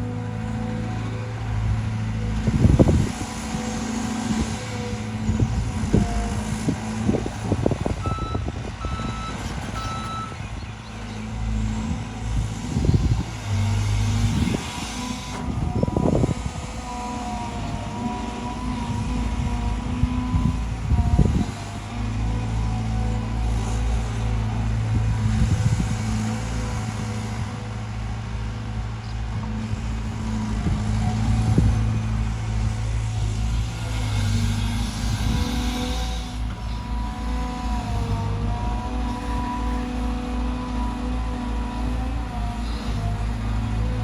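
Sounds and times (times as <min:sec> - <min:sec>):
excavator diesel engine running: 0:00.0 - 0:44.0
reversing alarm beeps: 0:08.0 - 0:10.4.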